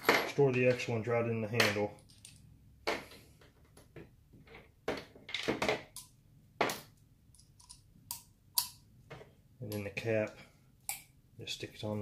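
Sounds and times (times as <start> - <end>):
screwdriver bits clicking: 7.3 - 8.8.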